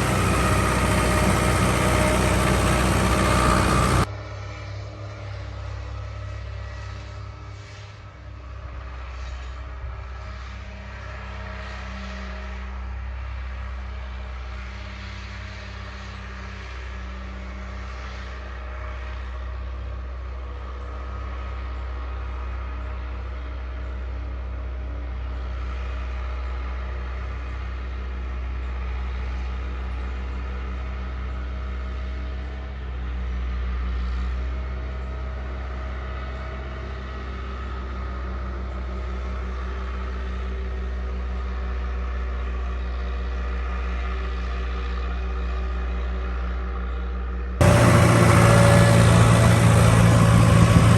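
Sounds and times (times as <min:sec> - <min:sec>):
vehicle engine running: 0:00.0 - 0:04.1, 0:47.6 - 0:50.9.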